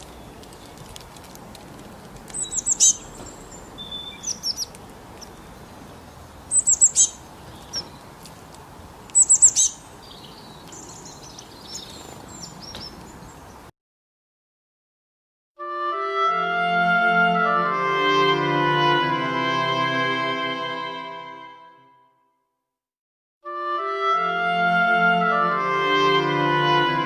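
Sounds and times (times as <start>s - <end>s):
songbird singing: 0.0s - 13.7s
faint bird chirps: 2.4s - 8.0s, 9.2s - 13.6s.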